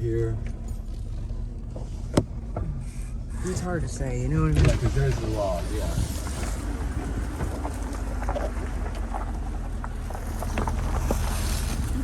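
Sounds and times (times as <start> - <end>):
car engine running at low speed: 0.0 - 12.0
knocks and rattles: 4.4 - 11.2.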